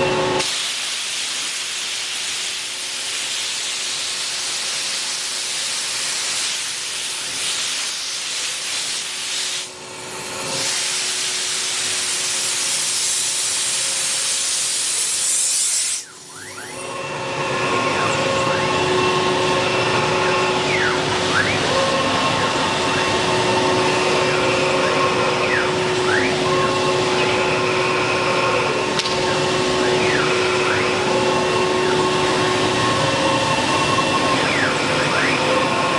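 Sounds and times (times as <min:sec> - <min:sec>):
machine whine: 0:00.0 - 0:00.5, 0:11.7 - 0:35.9
wood router hissing: 0:15.1 - 0:35.9.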